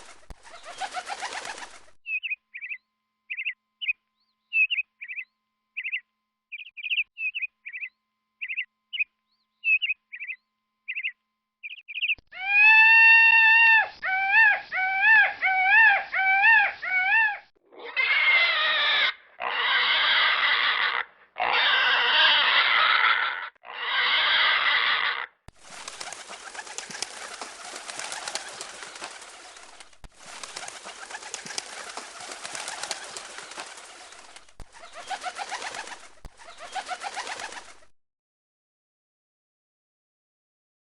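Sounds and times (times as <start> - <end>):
pigeon wings flapping: 0.0 - 2.0, 25.5 - 37.9
high bird chirps: 2.0 - 12.3
pig squealing: 12.4 - 25.3.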